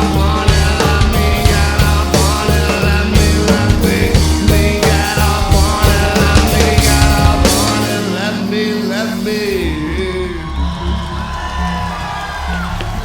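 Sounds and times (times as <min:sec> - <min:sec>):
drums beating: 0:00.0 - 0:09.8
live rock band playing: 0:00.0 - 0:10.3
held bass notes: 0:00.0 - 0:13.0.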